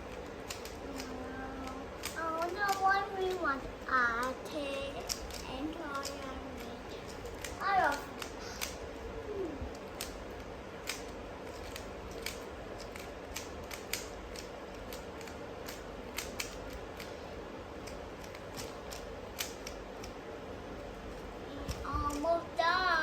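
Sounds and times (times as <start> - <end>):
plastic puzzle cube clicking: 0.4 - 1.1, 5.0 - 8.8, 10.8 - 17.1, 17.8 - 20.2.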